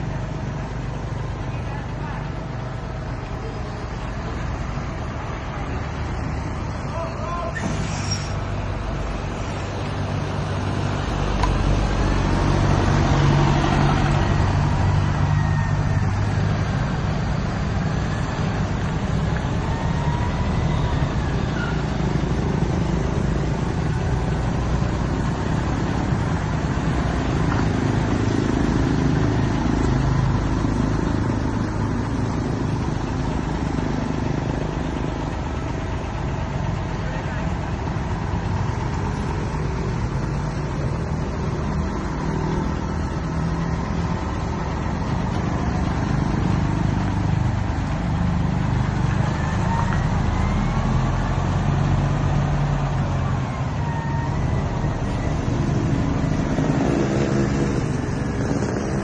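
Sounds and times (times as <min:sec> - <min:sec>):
truck diesel engine running: 0:00.0 - 0:59.0.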